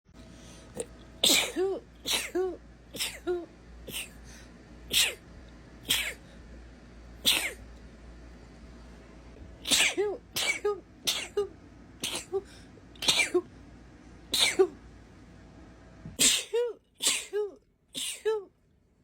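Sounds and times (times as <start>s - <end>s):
woman sneezing: 1.2s - 4.2s, 4.9s - 5.2s, 5.9s - 6.2s, 9.6s - 13.4s, 14.3s - 14.8s, 16.2s - 18.5s.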